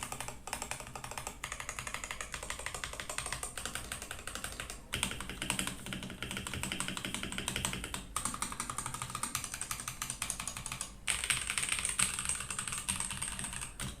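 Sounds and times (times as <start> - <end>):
fast mechanical keyboard typing: 0.0 - 14.0.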